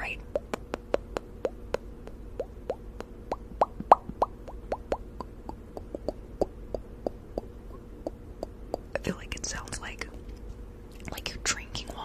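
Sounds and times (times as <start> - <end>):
wet mouth pops: 0.3 - 8.9.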